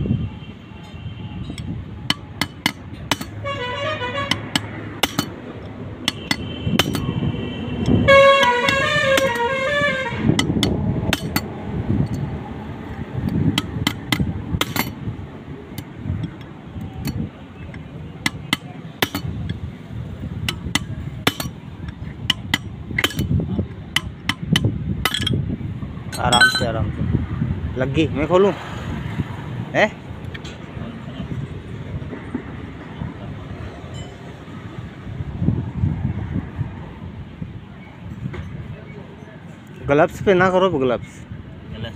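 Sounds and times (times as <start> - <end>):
metal tools clinking on metal: 1.4 - 3.4, 4.3 - 7.2, 10.4 - 11.5, 13.3 - 15.0, 15.8 - 19.6, 20.4 - 23.4, 24.0 - 25.4, 26.1 - 26.8, 33.9 - 34.3
vehicle horn honking: 3.2 - 4.7, 6.0 - 10.6.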